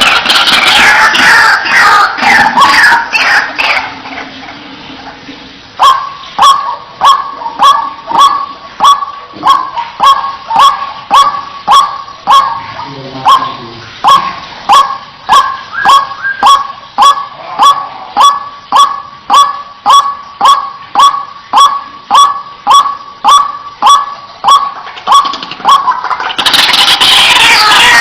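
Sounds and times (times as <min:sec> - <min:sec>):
waterhen calling kwak: 0:00.0 - 0:04.7, 0:05.8 - 0:28.0.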